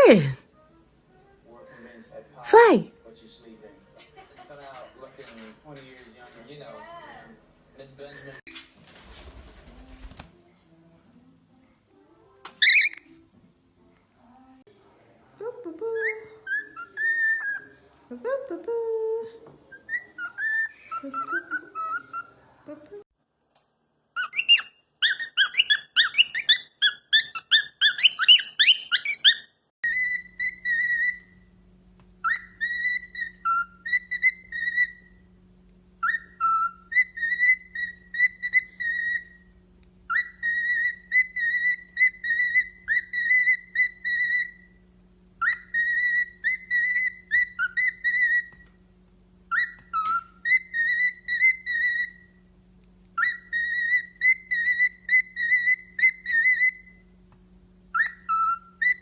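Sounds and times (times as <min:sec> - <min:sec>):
parrot chirping: 0:02.5 - 0:02.9, 0:12.5 - 0:13.2, 0:16.0 - 0:18.0, 0:19.7 - 0:22.6, 0:24.2 - 0:31.5, 0:32.2 - 0:35.3, 0:36.0 - 0:44.8, 0:45.4 - 0:48.8, 0:49.5 - 0:52.4, 0:53.1 - 0:57.1, 0:57.9 - 0:59.0
steady low hum: 0:29.8 - 0:59.0.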